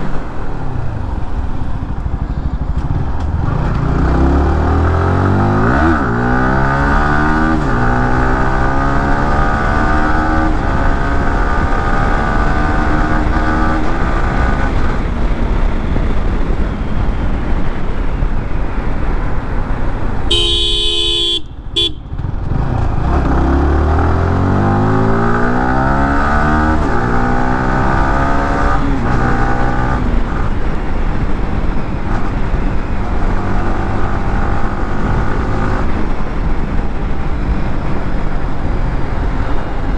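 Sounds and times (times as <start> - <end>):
motorcycle engine accelerating: 0.1 - 39.9
brief horn: 20.3 - 22.3.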